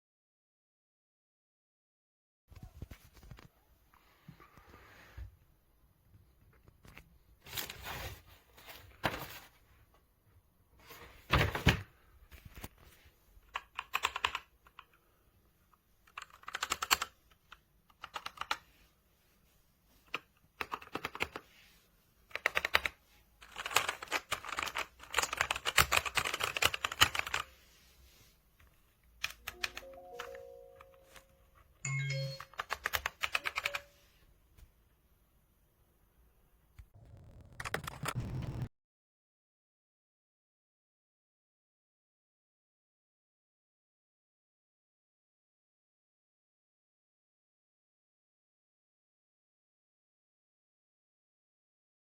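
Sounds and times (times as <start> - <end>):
mechanical keyboard typing: 13.5 - 14.9, 16.1 - 18.6, 20.1 - 21.4, 22.3 - 27.5, 32.1 - 33.9.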